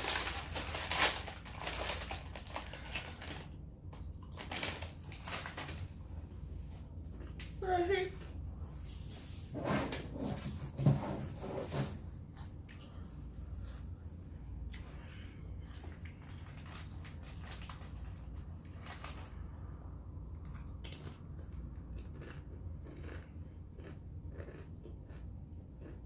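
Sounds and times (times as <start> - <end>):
crunching chips: 0.0 - 5.9, 15.7 - 19.4, 20.4 - 26.0
steady low hum: 0.0 - 26.0.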